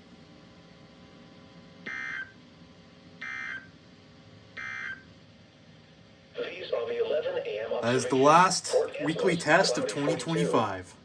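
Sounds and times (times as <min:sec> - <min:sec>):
digital data tone bursts: 0:07.8 - 0:10.7.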